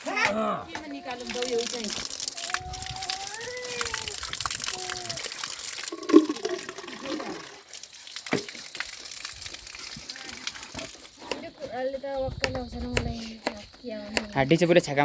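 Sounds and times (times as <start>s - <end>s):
water running: 0.8s - 11.5s.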